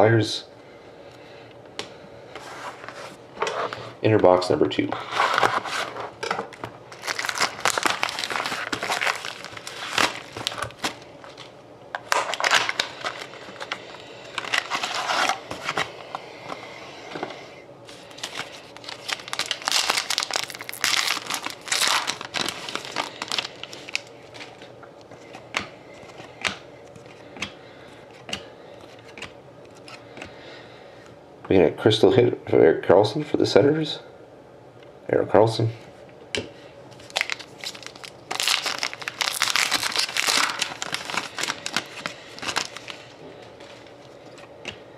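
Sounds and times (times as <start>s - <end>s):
wrappers crinkling and tearing: 6.6s - 15.9s, 17.9s - 25.4s, 37.0s - 43.9s.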